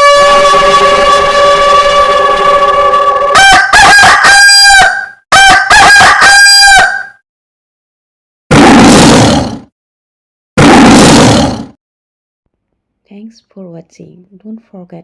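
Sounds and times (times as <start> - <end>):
steady honking tone: 0.0 - 6.9
rooster crowing: 0.0 - 7.1.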